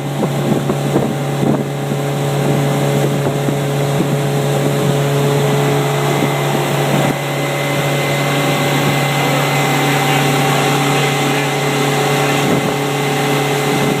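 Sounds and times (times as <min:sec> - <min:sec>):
boat motor running: 0:00.0 - 0:14.0
rushing noise: 0:04.4 - 0:14.0.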